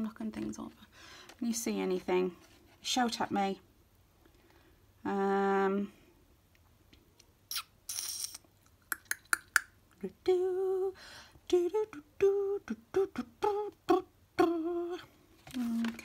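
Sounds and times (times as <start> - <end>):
woman humming: 11.5 - 16.0
paper rustling: 15.4 - 16.0.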